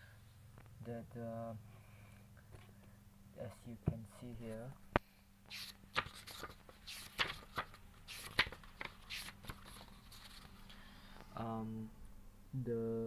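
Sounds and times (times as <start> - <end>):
paper pages rustling: 5.5 - 10.8.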